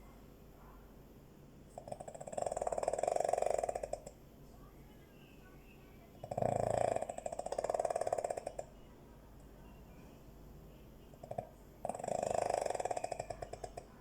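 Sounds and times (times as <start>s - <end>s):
dog snorting: 1.7s - 4.1s, 6.2s - 8.7s, 11.2s - 13.9s
dog snoring: 1.7s - 4.2s, 6.2s - 8.7s, 11.1s - 14.0s.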